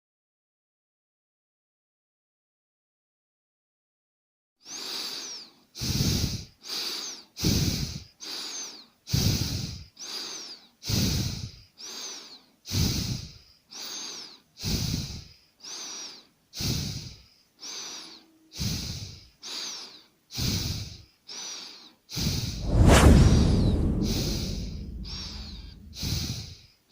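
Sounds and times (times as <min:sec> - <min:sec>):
person breathing hard: 0:04.6 - 0:22.6, 0:24.8 - 0:26.6.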